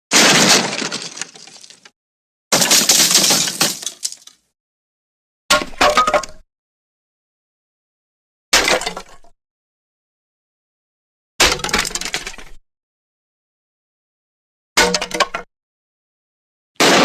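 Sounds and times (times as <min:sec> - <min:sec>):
glass breaking: 0:00.1 - 0:01.9, 0:02.5 - 0:04.4, 0:16.8 - 0:17.0.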